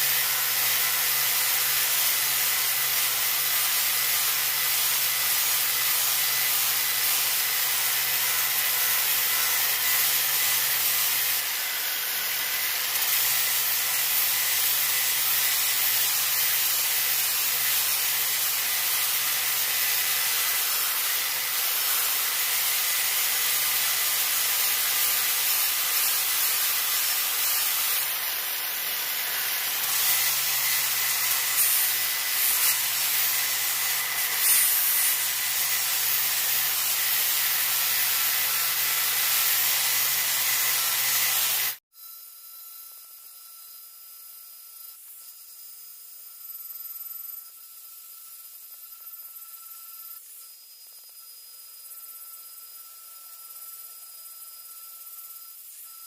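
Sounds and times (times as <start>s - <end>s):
angle grinder sanding cast iron: 0.0s - 41.8s.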